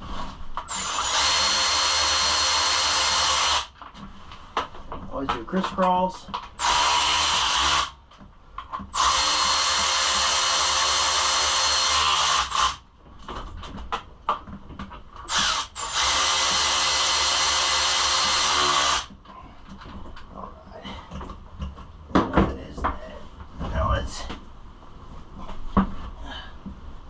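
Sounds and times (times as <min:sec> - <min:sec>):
cordless drill driving bolts: 0:00.7 - 0:03.8, 0:06.4 - 0:08.0, 0:08.9 - 0:12.8, 0:15.3 - 0:19.1.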